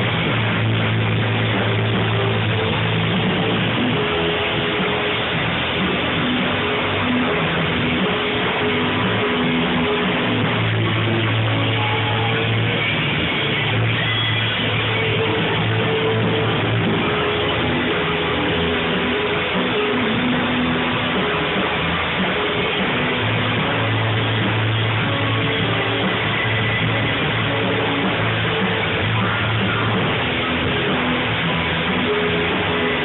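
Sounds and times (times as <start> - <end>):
guitar: 0.0 - 33.0
live band playing: 0.0 - 33.0.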